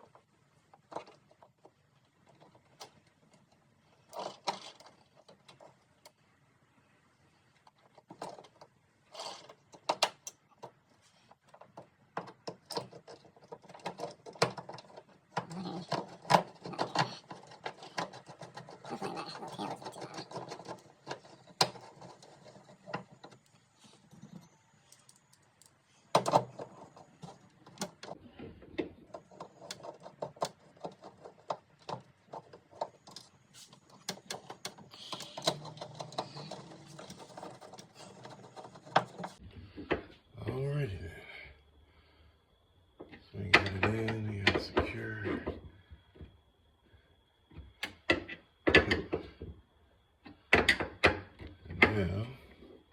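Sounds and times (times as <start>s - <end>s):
hardware clicking and rattling: 0.0s - 6.2s, 7.6s - 39.4s.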